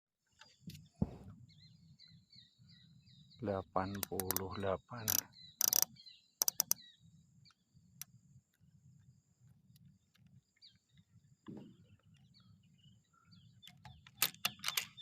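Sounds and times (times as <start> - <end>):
bird chirps: 0.4 - 8.2, 9.8 - 15.0
sharp clicks: 3.9 - 6.8.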